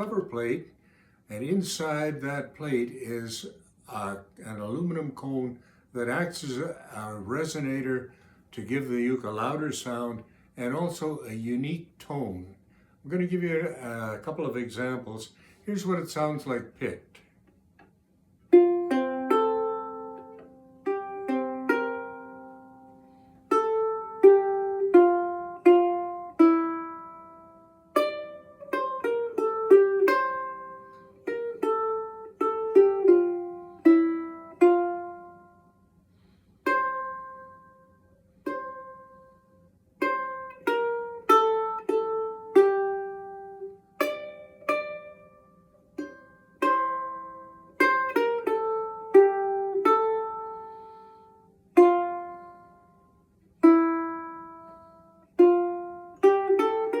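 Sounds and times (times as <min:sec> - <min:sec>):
resonator ukulele plucked melody: 0:18.4 - 0:57.0.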